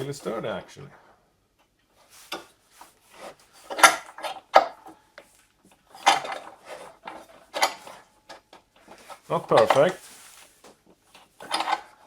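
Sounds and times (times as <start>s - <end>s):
metal clamp clanking: 3.6s - 5.0s, 5.9s - 10.0s, 11.4s - 12.0s.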